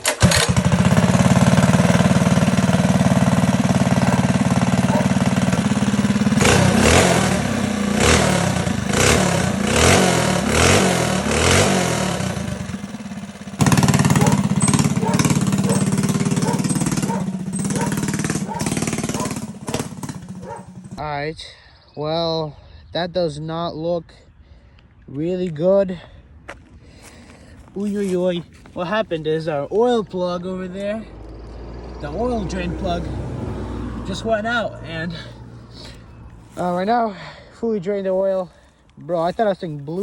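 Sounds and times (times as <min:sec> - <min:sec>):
small engine revving: 0:00.0 - 0:21.0, 0:30.4 - 0:36.8.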